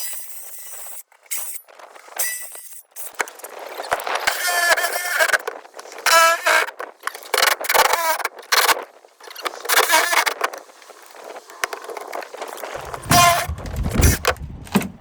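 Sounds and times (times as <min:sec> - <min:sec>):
scraping and cracking fiberglass: 0:00.0 - 0:15.0
low rumble: 0:12.8 - 0:15.0.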